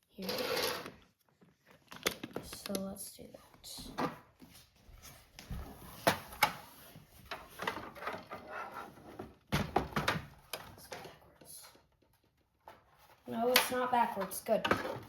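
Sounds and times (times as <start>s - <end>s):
plastic parts clattering: 0.1s - 2.9s
plastic parts rustling: 0.1s - 3.0s.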